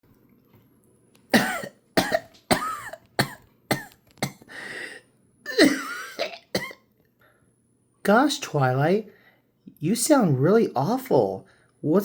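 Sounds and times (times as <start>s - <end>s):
person coughing hard: 1.3s - 4.5s, 5.5s - 6.8s.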